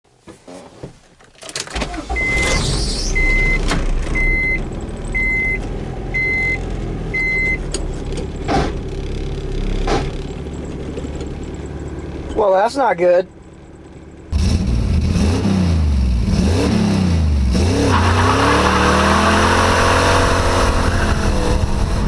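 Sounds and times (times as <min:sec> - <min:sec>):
dashboard warning chime beeping: 0:02.0 - 0:02.6, 0:03.2 - 0:03.6, 0:04.2 - 0:07.7
car engine running: 0:02.0 - 0:22.0.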